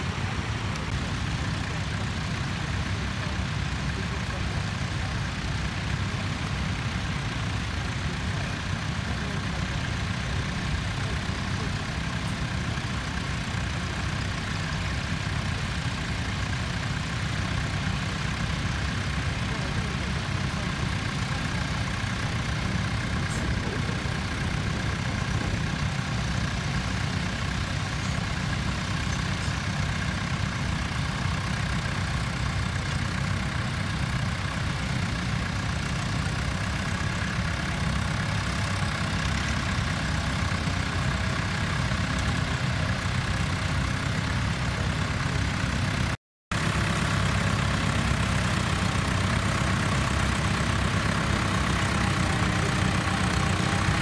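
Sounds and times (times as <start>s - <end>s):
tractor engine running: 0.0s - 54.0s.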